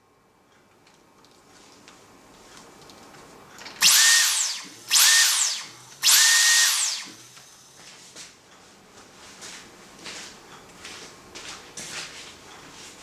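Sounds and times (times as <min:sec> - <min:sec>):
vacuum cleaner motor whine: 0:03.8 - 0:08.0.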